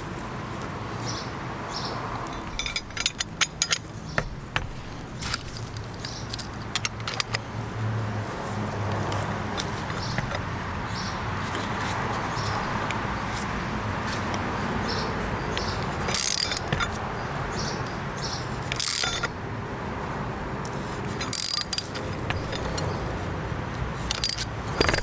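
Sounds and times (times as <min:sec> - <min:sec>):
chain tool clicking: 0:02.2 - 0:07.5, 0:08.9 - 0:10.5, 0:15.6 - 0:17.0, 0:18.2 - 0:19.4, 0:20.6 - 0:23.1, 0:24.0 - 0:25.0.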